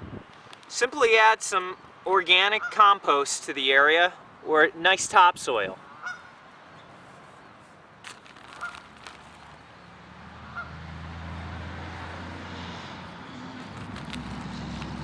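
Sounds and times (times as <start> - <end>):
vehicle engine approaching: 9.3 - 15.0.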